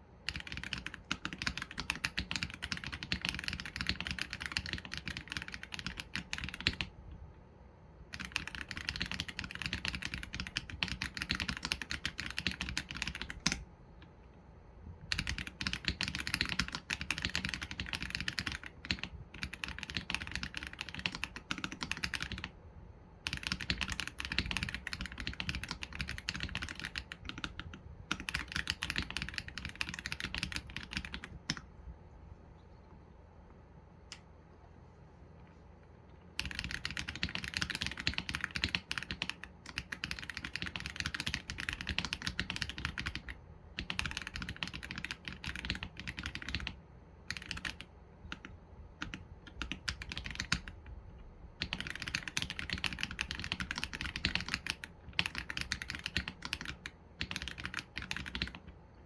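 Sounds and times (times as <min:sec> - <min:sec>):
mechanical keyboard typing: 0:00.2 - 0:07.0, 0:08.1 - 0:14.1, 0:15.0 - 0:22.6, 0:23.2 - 0:31.7, 0:36.3 - 0:51.0, 0:51.6 - 0:58.9.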